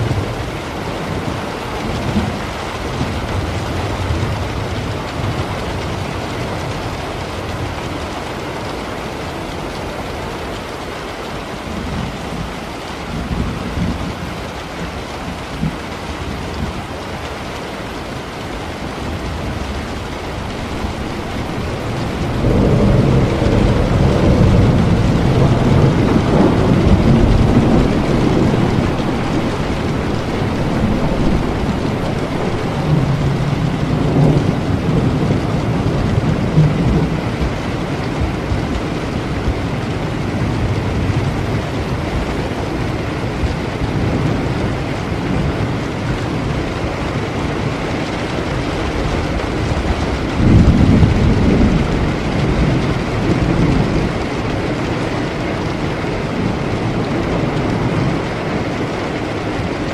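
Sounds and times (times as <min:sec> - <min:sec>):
rolling thunder rumble: 0:00.0 - 0:59.9
steady rain: 0:00.0 - 0:59.9.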